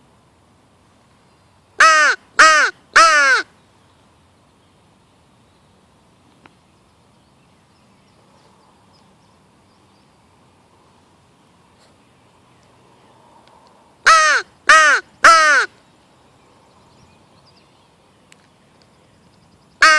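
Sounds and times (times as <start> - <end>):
crow call caws: 14.0 - 15.8.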